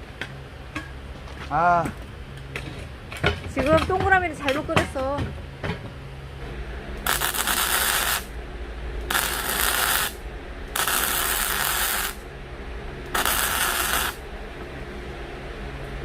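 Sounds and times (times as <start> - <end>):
power tool cutting steel: 7.1 - 8.3, 9.1 - 10.2, 10.8 - 12.2, 13.2 - 14.2.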